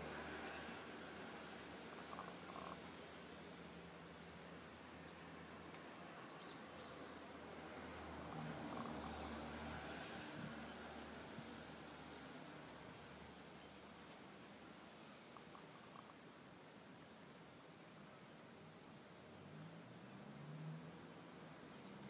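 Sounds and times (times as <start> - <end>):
hen snoring with high squeaks: 2.1 - 2.9, 8.6 - 9.4.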